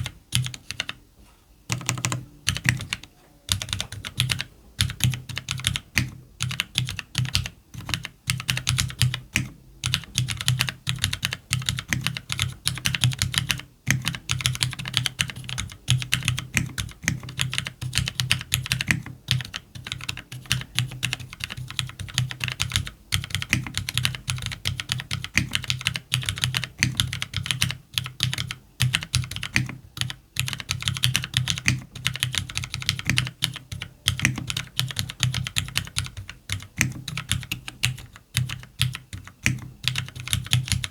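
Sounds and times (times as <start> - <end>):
fast typing on mechanical keyboard: 0.0 - 1.0, 1.7 - 40.9.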